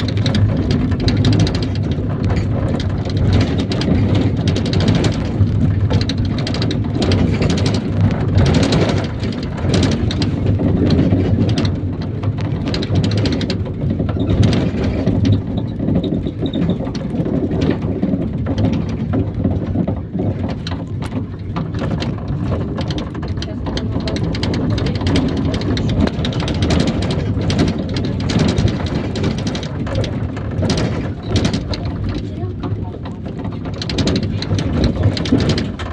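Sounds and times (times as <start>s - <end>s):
body rattles and knocks: 0.0s - 35.9s
diesel engine running: 0.0s - 35.9s
road noise rumble: 0.0s - 35.9s.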